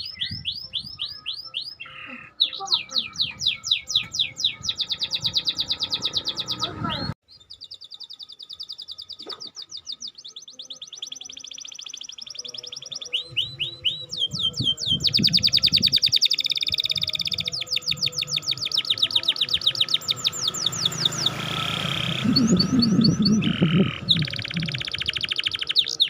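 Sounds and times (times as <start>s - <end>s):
canary singing trills: 0.0s - 26.0s.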